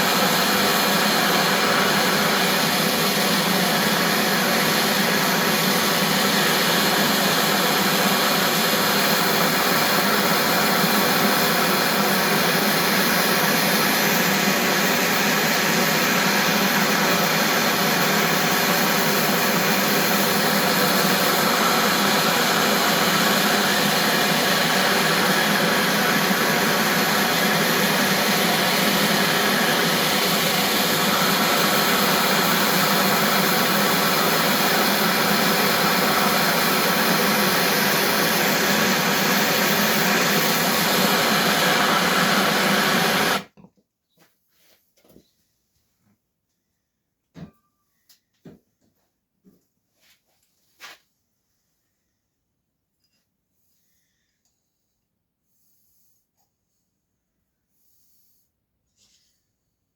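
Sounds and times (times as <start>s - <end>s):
heating tool rushing: 0.0s - 43.5s.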